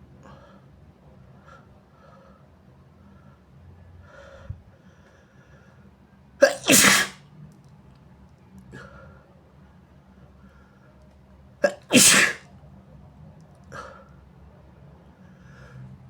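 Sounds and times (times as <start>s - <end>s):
loud sneeze: 6.4s - 7.2s, 11.6s - 12.4s.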